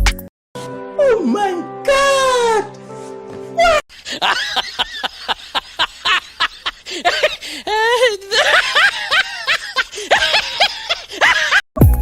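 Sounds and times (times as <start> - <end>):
person laughing: 3.6 - 11.6.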